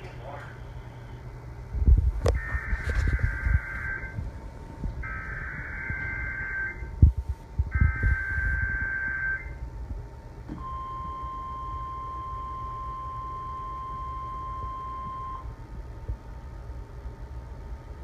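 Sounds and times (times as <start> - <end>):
low rumble: 0.6 - 9.0
steady warning alarm tone: 2.0 - 9.7, 10.5 - 15.7
two-tone data burst: 2.3 - 4.2, 7.8 - 9.6.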